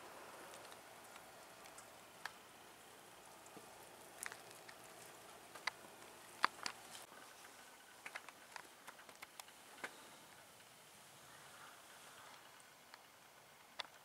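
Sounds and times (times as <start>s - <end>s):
snow and drops ticking: 0.0s - 7.1s
faint steady hiss: 0.0s - 14.0s.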